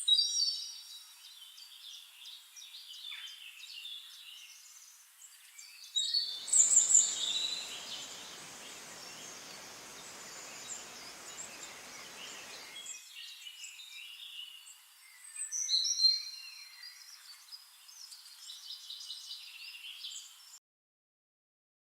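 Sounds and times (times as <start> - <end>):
birds chirping: 6.1 - 13.4
steady background hiss: 6.3 - 14.1.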